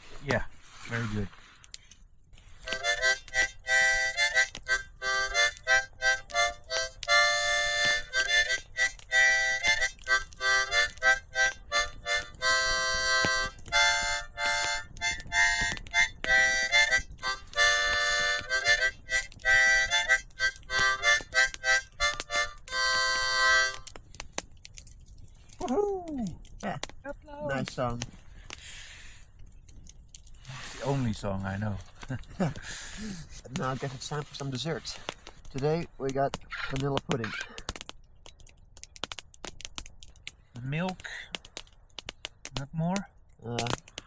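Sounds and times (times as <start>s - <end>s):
breaths: 0.0s - 2.8s, 28.1s - 29.4s, 30.3s - 31.1s, 32.3s - 34.1s, 37.4s - 37.8s, 41.0s - 41.6s, 43.8s - 44.0s
harmonica playing chords: 2.6s - 23.9s.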